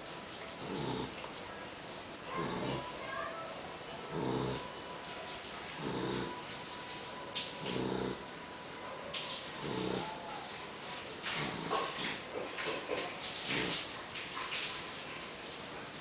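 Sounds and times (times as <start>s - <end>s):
dog snoring loudly: 0.5s - 1.3s, 2.3s - 3.0s, 4.1s - 4.8s, 5.7s - 6.6s, 7.5s - 8.4s, 9.4s - 10.4s, 11.2s - 12.2s, 13.4s - 13.9s.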